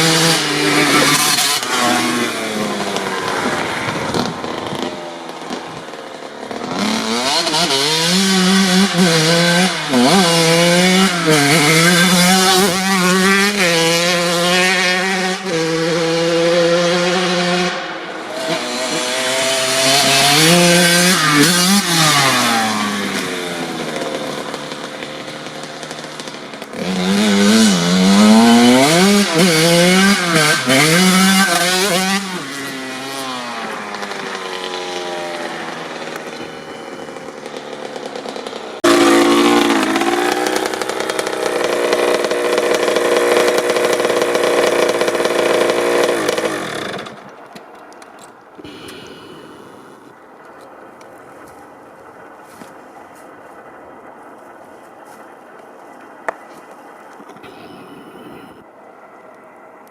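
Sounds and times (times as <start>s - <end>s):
two-stroke motorcycle engine revving: 0.0s - 47.4s, 48.6s - 50.2s.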